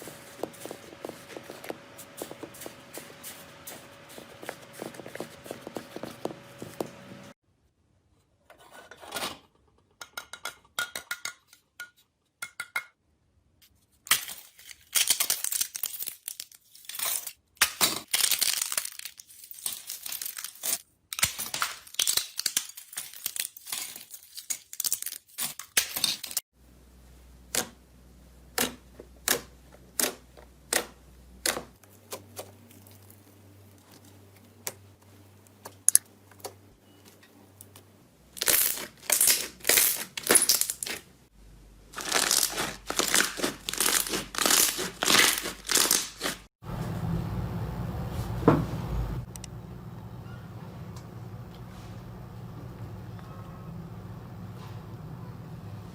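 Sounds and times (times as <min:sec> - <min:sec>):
slime crackling and popping: 0:42.0 - 0:46.4.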